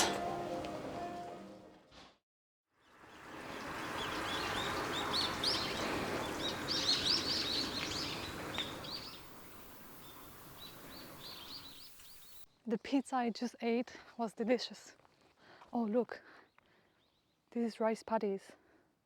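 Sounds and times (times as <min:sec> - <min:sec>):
small birds chirping: 0:02.8 - 0:13.4, 0:16.2 - 0:17.5
outdoor hiss: 0:03.0 - 0:12.4.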